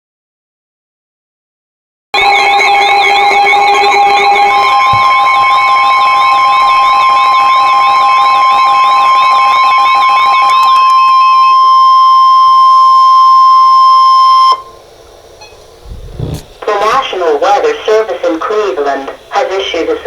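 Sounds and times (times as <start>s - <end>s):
steady alarm tone: 2.2s - 14.8s.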